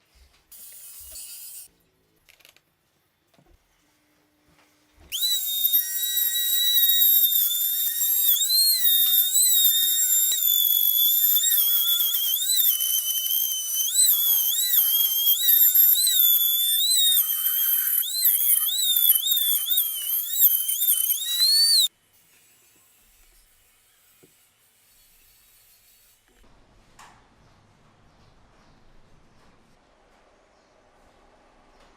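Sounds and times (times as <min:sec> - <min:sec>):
high-speed power tool whine: 0:05.1 - 0:21.9.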